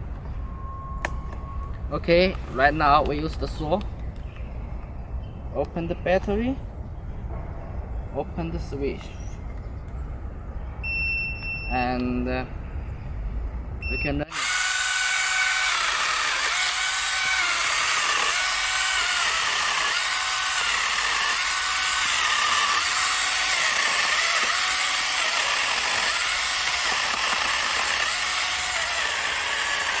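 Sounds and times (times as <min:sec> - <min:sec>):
electric chain saw whining: 0:14.3 - 0:30.0.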